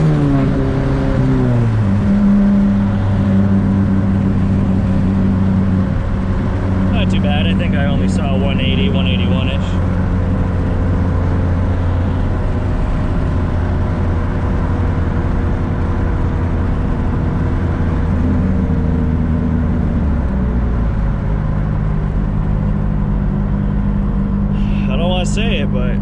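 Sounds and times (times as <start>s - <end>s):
car engine driving: 0.0s - 26.0s
road noise: 0.0s - 26.0s.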